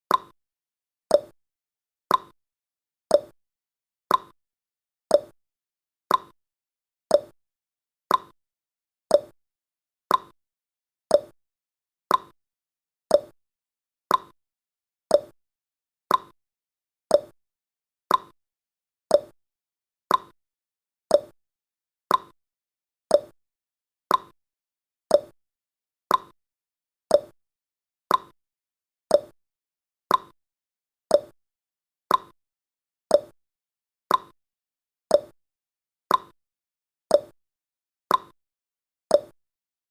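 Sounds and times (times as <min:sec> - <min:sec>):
timer ticking: 0:00.1 - 0:00.3, 0:01.1 - 0:01.3, 0:02.1 - 0:02.4, 0:03.1 - 0:03.4, 0:04.1 - 0:04.4, 0:05.1 - 0:05.4, 0:06.1 - 0:06.4, 0:07.1 - 0:07.4, 0:08.1 - 0:08.4, 0:09.1 - 0:09.4, 0:10.1 - 0:10.4, 0:11.1 - 0:11.4, 0:12.1 - 0:12.4, 0:13.1 - 0:13.4, 0:14.1 - 0:14.4, 0:15.1 - 0:15.4, 0:16.1 - 0:16.4, 0:17.1 - 0:17.4, 0:18.1 - 0:18.4, 0:19.1 - 0:19.4, 0:20.1 - 0:20.4, 0:21.1 - 0:21.4, 0:22.1 - 0:22.4, 0:23.1 - 0:23.4, 0:24.1 - 0:24.4, 0:25.1 - 0:25.4, 0:26.1 - 0:26.4, 0:27.1 - 0:27.4, 0:28.1 - 0:28.4, 0:29.1 - 0:29.4, 0:30.1 - 0:30.4, 0:31.1 - 0:31.4, 0:32.1 - 0:32.4, 0:33.1 - 0:33.4, 0:34.1 - 0:34.4, 0:35.1 - 0:35.4, 0:36.1 - 0:36.4, 0:37.1 - 0:37.4, 0:38.1 - 0:38.4, 0:39.1 - 0:39.4.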